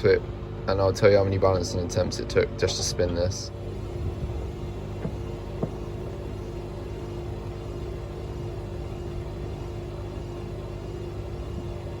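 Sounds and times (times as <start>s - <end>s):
washing machine motor and drum: 0.0s - 12.0s
light knocks: 5.0s - 5.8s.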